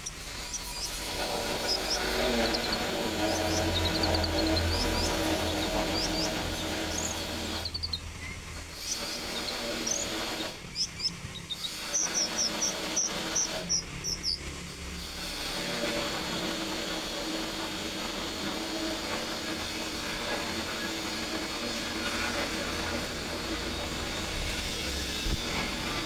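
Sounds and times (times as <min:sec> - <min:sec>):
low hum: 0:00.0 - 0:14.4
songbird chirping: 0:00.0 - 0:14.5
steady hiss: 0:00.0 - 0:26.0.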